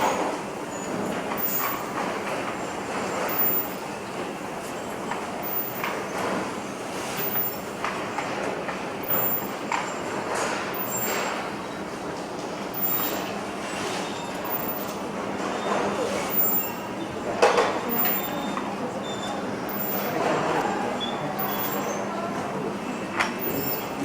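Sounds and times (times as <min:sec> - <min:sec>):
mechanical rumble and hiss: 0:21.3 - 0:24.0.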